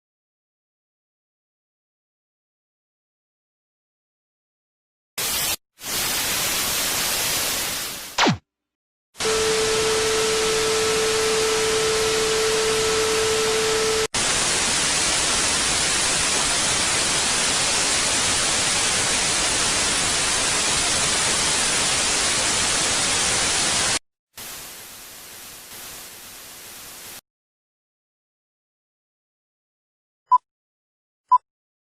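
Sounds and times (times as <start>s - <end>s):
tv static hiss: 9.2s - 27.2s.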